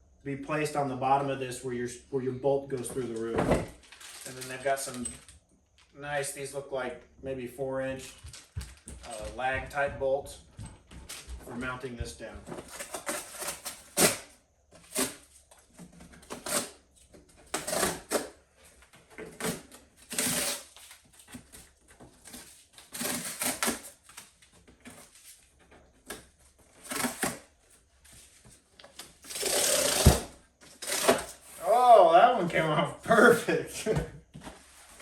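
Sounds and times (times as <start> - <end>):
packaging rustling and scraping: 2.8 - 5.4, 8.0 - 9.4, 11.0 - 33.4, 34.4 - 35.0.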